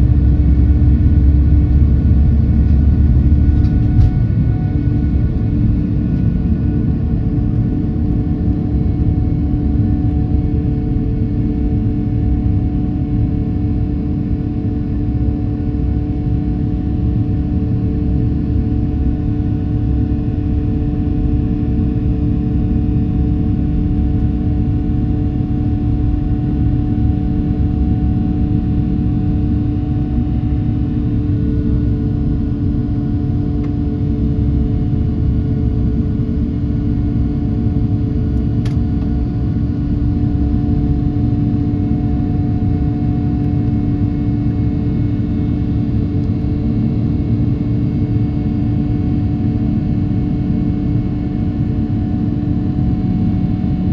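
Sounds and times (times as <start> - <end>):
jet engines droning: 0.0 - 12.3.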